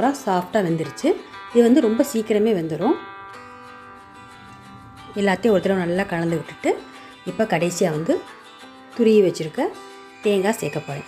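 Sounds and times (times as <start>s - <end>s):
soft plucked string music: 0.6s - 9.1s.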